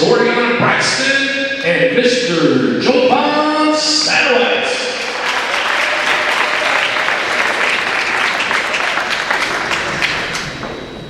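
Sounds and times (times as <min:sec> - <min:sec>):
large crowd clapping: 0:04.9 - 0:11.0.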